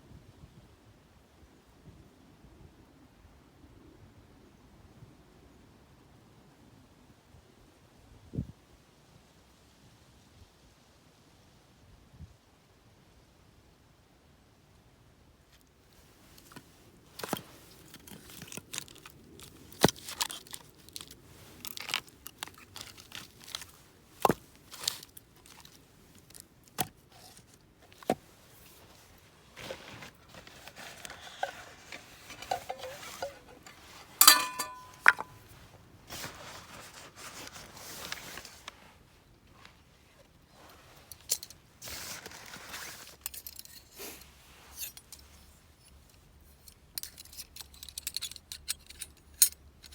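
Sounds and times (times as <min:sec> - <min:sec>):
rough noise: 0:27.1 - 0:37.2.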